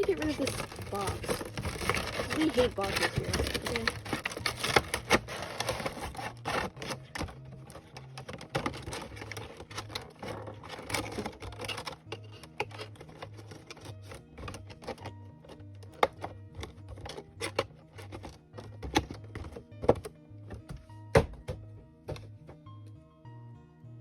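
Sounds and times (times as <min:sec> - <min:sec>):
cardboard box tearing and crushing: 0:00.0 - 0:12.0.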